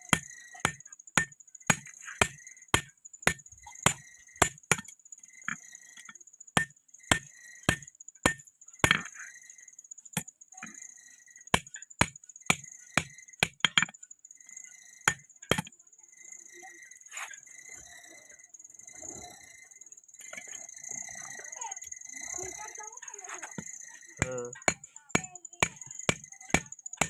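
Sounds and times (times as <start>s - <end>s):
hammer striking metal on anvil: 6.6s - 9.1s.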